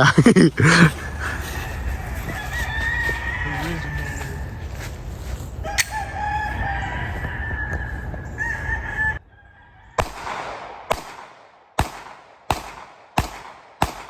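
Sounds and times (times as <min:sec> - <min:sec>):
pistol shots: 0:10.0 - 0:14.0.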